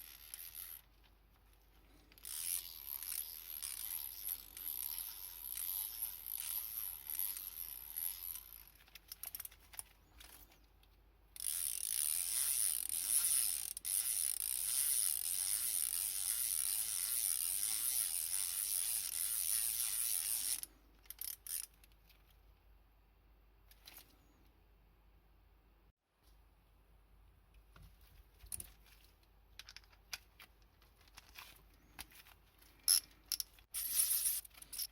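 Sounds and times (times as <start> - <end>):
hand ratchet clicking: 2.1 - 9.6, 11.4 - 21.7.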